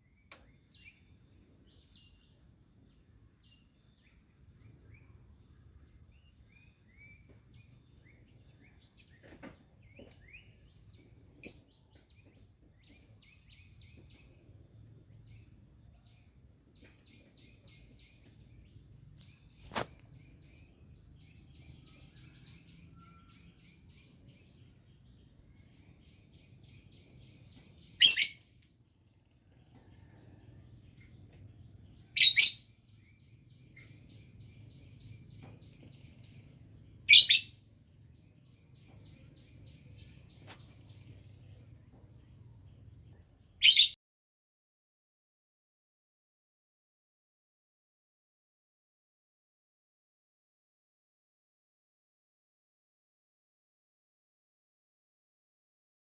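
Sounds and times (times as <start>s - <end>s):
songbirds chirping: 0.0s - 44.0s.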